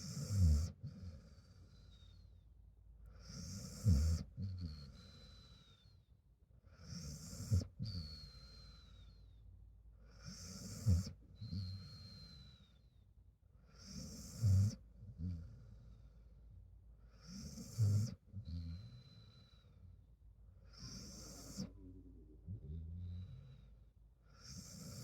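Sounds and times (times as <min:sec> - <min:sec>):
dog snoring: 0:00.0 - 0:02.3, 0:03.1 - 0:05.8, 0:06.7 - 0:09.2, 0:10.0 - 0:12.8, 0:13.7 - 0:16.1, 0:17.0 - 0:19.8, 0:20.6 - 0:25.0.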